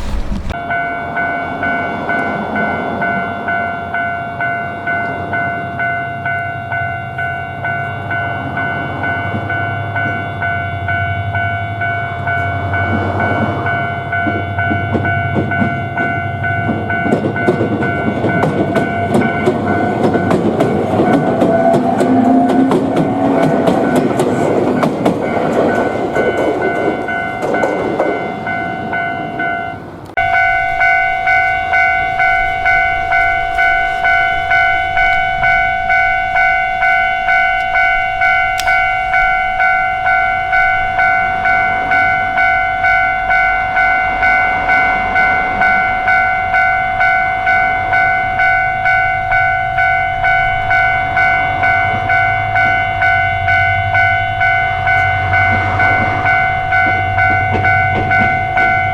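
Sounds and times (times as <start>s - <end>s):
electric train rumbling past: 0.0s - 58.9s
level crossing electronic bell: 30.2s - 58.9s.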